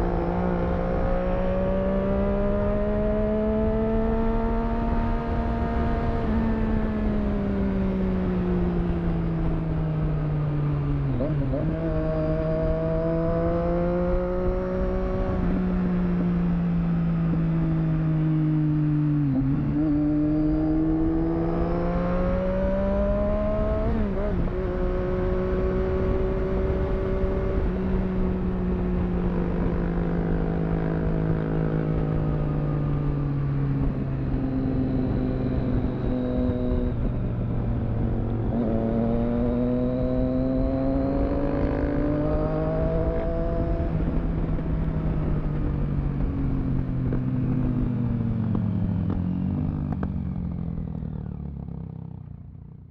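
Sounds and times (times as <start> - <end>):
motorcycle engine changing gears: 10.8 - 52.3.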